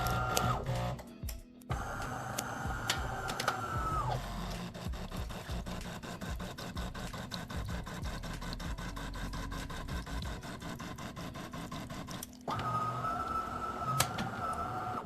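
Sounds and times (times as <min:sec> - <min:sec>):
espresso machine pump humming: 0:00.0 - 0:01.0, 0:01.7 - 0:15.0.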